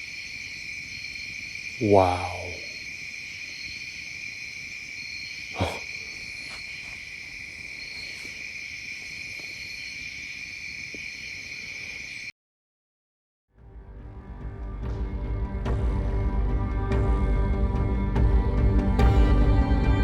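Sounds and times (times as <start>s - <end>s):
crickets trilling: 0.0s - 12.3s.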